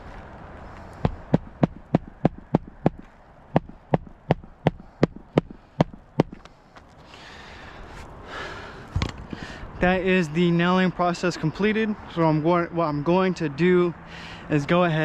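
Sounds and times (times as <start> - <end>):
hammer striking nail: 3.6 - 6.4.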